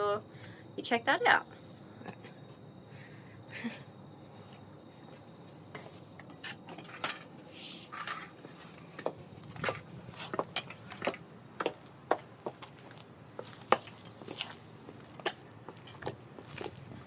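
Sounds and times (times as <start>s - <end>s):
heels scraping: 10.1s - 16.9s.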